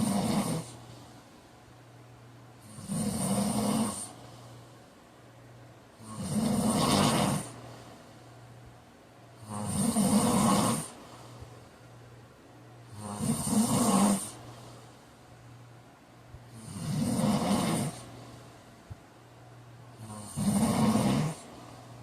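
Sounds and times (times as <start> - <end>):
man snoring loudly: 0.0 - 0.8, 2.6 - 4.2, 6.0 - 7.6, 9.4 - 11.0, 12.9 - 14.4, 16.5 - 18.0, 20.0 - 21.5.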